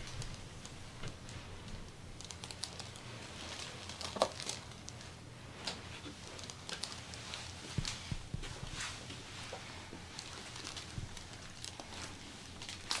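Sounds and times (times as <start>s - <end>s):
faint clicks and taps: 3.9s - 9.2s
hands rustling over skin and clothing: 4.6s - 13.0s.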